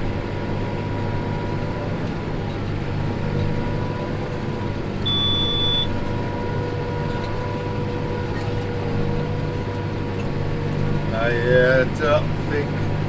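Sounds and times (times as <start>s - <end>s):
tractor and round baler running: 0.0s - 13.0s
short high electronic beep: 5.1s - 5.9s.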